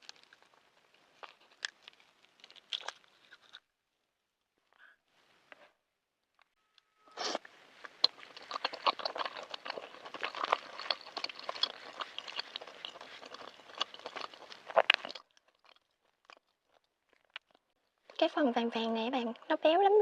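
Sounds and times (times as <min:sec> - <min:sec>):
person chewing with clicks: 0:01.2 - 0:03.6, 0:07.8 - 0:17.7.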